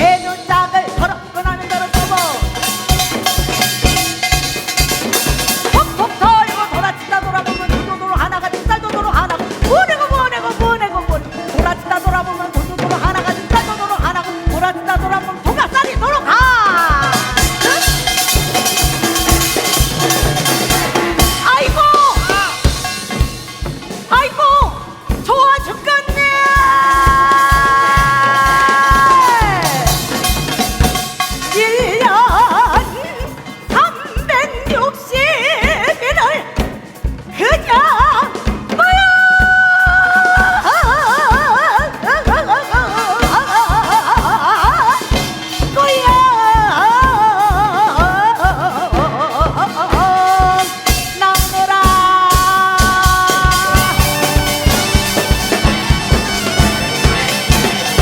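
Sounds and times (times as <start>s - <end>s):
steady drum beats: 0.0s - 58.0s
high melody with wide vibrato: 16.5s - 25.0s, 52.2s - 58.0s.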